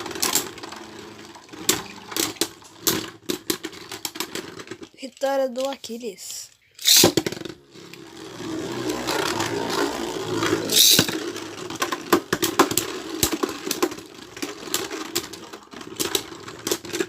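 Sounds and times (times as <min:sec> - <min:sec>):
spinning tops whirring: 0:00.0 - 0:04.8, 0:06.8 - 0:17.0
spinning tops clacking together: 0:06.8 - 0:08.0, 0:08.7 - 0:17.0.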